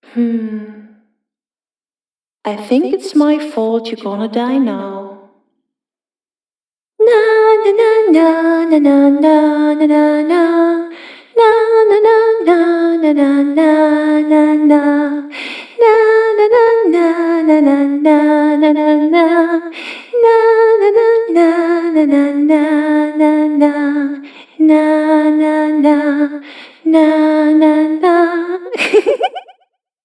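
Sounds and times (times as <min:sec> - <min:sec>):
girl humming a slow tune: 0:00.0 - 0:00.9.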